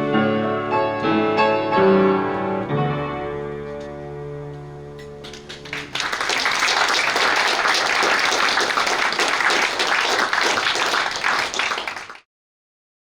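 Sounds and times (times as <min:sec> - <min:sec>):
piano chord: 0:00.0 - 0:05.0
audience applauding: 0:05.2 - 0:12.3.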